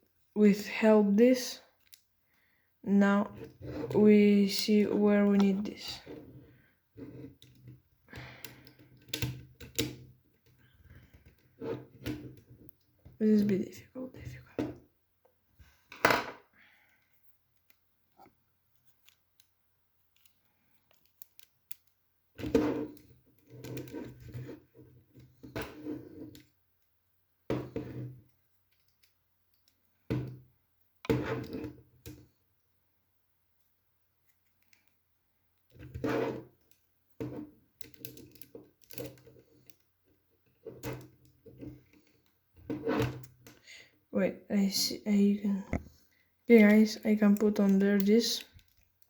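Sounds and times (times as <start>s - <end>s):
plastic pieces clicking and rattling: 18.7s - 22.0s, 28.6s - 30.0s, 37.8s - 39.9s, 46.5s - 49.0s.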